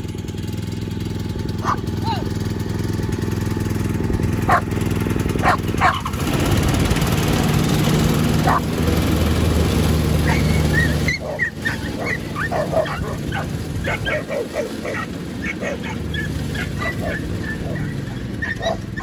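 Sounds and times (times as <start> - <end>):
lawnmower engine running: 0.0 - 19.0
dog barking: 1.6 - 2.3, 4.5 - 4.7, 5.4 - 6.2, 8.4 - 8.6, 10.2 - 19.0.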